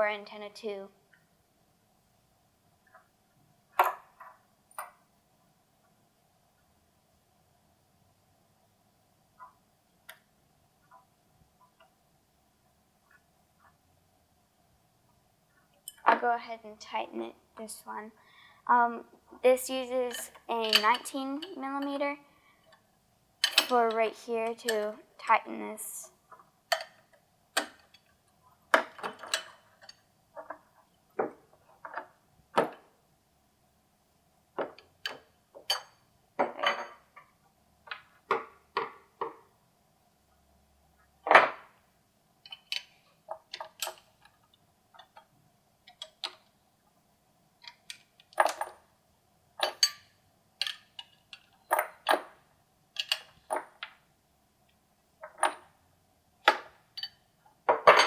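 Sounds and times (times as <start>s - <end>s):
faint steady hum: 0.0s - 58.0s
wrench clinking on metal: 20.0s - 21.6s, 23.4s - 23.9s, 35.0s - 36.0s, 49.6s - 52.2s, 53.0s - 53.4s, 56.5s - 57.2s.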